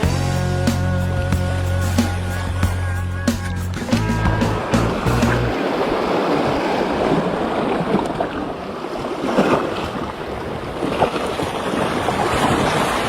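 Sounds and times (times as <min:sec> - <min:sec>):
sea waves on the shore: 0:00.0 - 0:13.0
wind on the microphone: 0:03.8 - 0:13.0.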